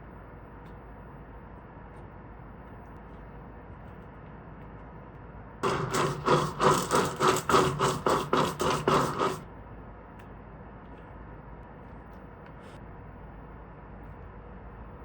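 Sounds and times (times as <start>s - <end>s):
kitchen utensil scraping: 5.6s - 9.4s.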